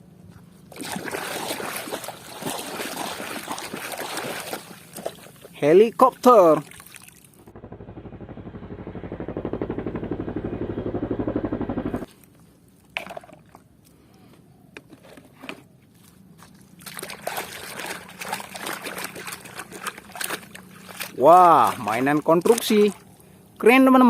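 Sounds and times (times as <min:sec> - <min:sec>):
water splashing over plastic toys: 0:00.7 - 0:07.4, 0:16.4 - 0:23.4.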